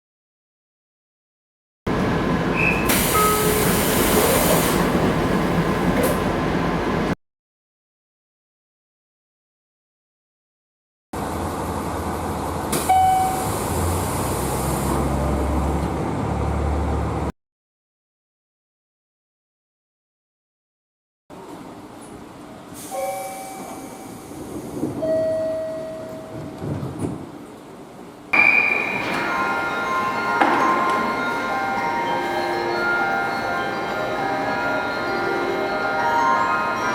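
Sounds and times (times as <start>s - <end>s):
low hum of train equipment: 1.9s - 7.2s, 11.2s - 17.2s, 21.3s - 36.9s
train door click: 2.6s - 6.4s
short clear beep: 28.4s - 31.5s.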